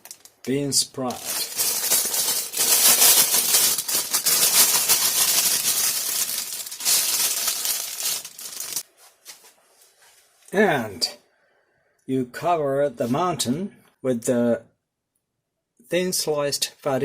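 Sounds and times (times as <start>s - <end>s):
plastic bag crinkling: 0.0s - 8.9s.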